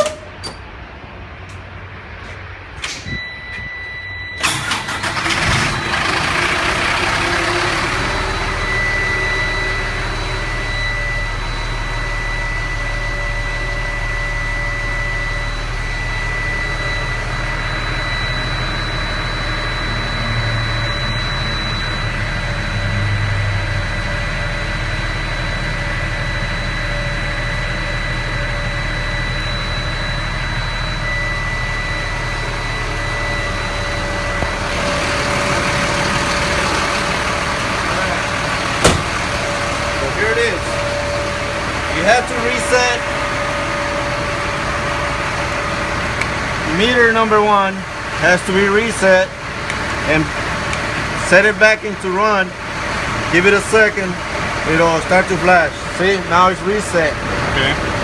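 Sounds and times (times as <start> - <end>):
truck engine cranking and idling: 0.0 - 58.0
steady high-pitched tone: 7.8 - 49.4.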